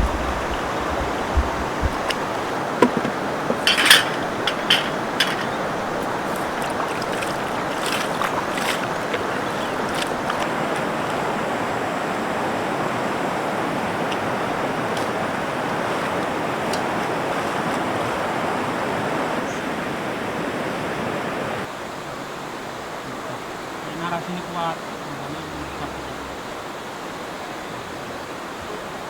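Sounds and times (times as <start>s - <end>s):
river water rushing: 0.0s - 29.0s
short clicks and knocks: 2.8s - 6.7s.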